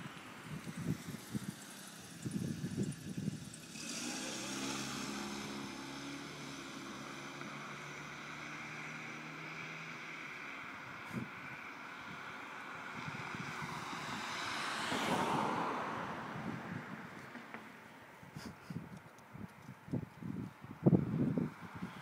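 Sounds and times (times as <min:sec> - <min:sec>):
wind buffeting microphone: 0:00.0 - 0:04.6, 0:10.9 - 0:17.5, 0:18.2 - 0:22.0.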